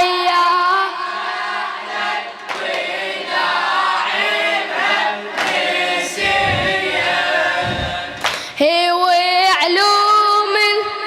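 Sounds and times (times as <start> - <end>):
group of voices singing: 0.8 - 9.1
deep low thumps: 6.2 - 8.4.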